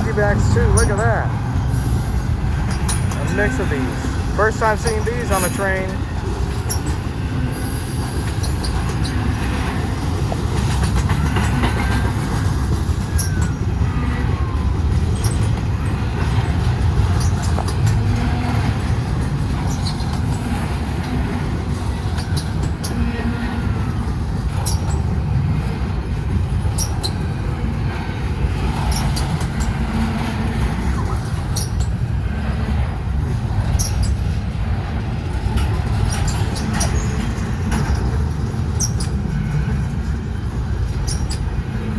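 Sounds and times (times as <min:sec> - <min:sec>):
freight train wheels rumbling on rail: 0:00.0 - 0:41.9
wheels clicking on rail: 0:00.0 - 0:41.9
faint wheel squeals: 0:10.6 - 0:18.9, 0:26.6 - 0:28.0, 0:33.6 - 0:34.4, 0:35.0 - 0:38.0, 0:38.6 - 0:41.9.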